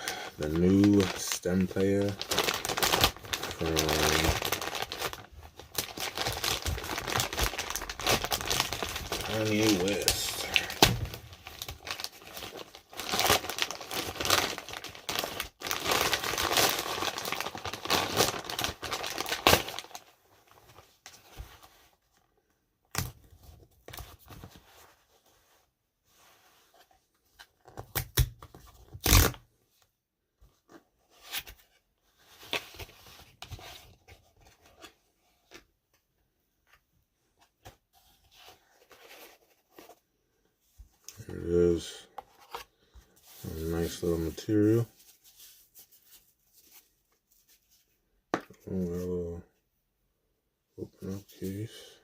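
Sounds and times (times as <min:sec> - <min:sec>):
packaging rustling: 0:00.0 - 0:21.9
packaging tearing and crinkling: 0:00.4 - 0:20.0, 0:27.9 - 0:29.4.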